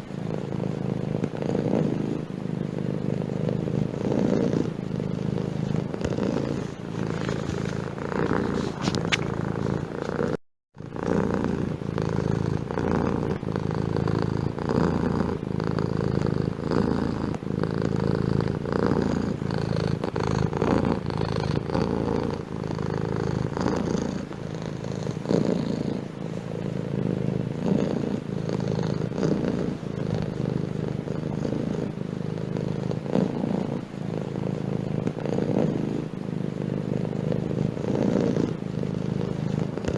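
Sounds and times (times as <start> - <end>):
cat purring: 0.0 - 39.9.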